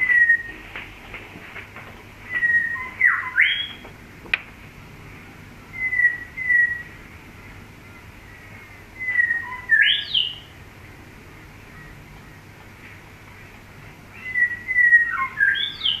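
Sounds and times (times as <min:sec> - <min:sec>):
bird whistling song: 0:00.0 - 0:00.6, 0:02.2 - 0:03.8, 0:05.7 - 0:07.0, 0:08.0 - 0:10.6, 0:14.1 - 0:16.0.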